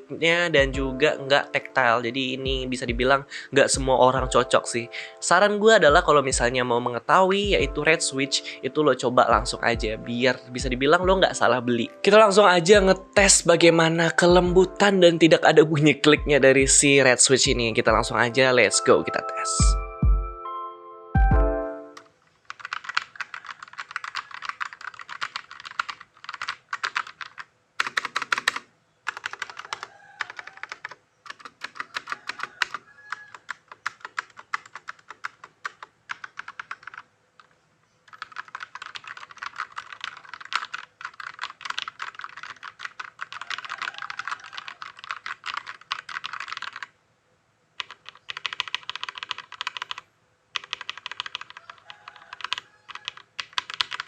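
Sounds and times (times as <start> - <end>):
fast typing on mechanical keyboard: 22.4 - 37.1, 38.1 - 46.9, 47.8 - 50.0, 50.6 - 54.0.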